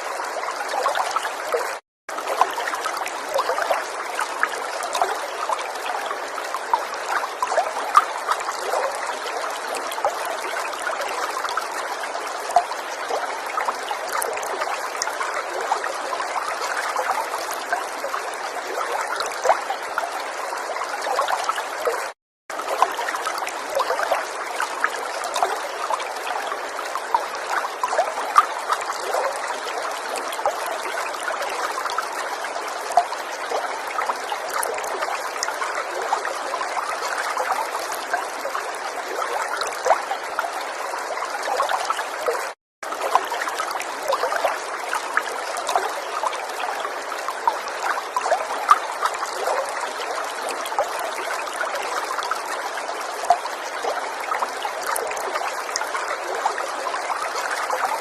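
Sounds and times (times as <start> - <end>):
river water babbling: 0.0 - 58.0.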